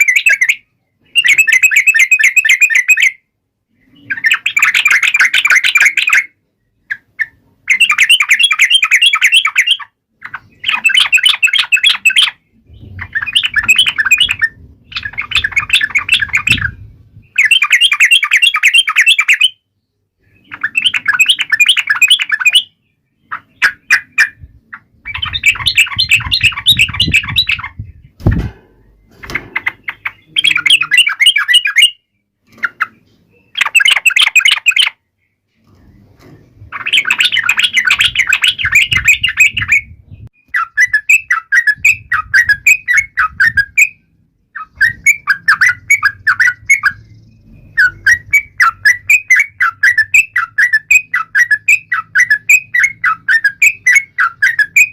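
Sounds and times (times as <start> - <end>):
bird singing fast chattering notes: 0.0 - 3.2, 3.8 - 35.1, 36.3 - 54.9.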